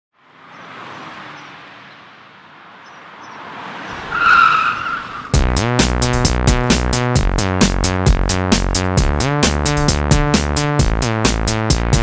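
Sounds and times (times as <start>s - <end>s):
high screech: 4.1s - 5.4s
electronic music with drum beat: 5.4s - 12.0s.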